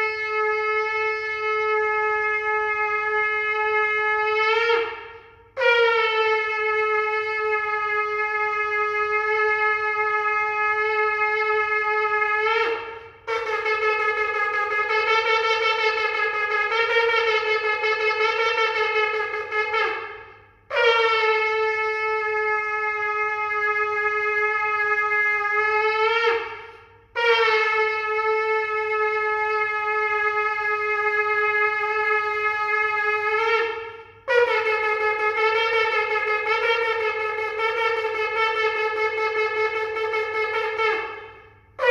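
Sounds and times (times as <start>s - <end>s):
shofar blasts: 0.0s - 41.9s.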